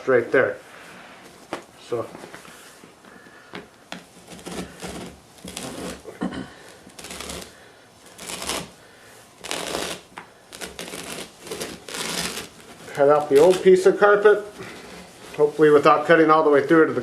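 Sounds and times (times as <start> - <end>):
blade rasping through carpet: 3.9 - 8.8, 9.4 - 15.9.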